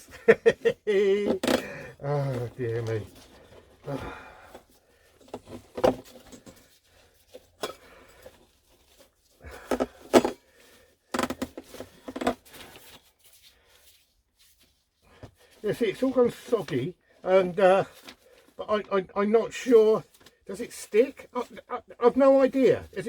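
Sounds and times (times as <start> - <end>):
rustling wrap: 1.1 - 9.6.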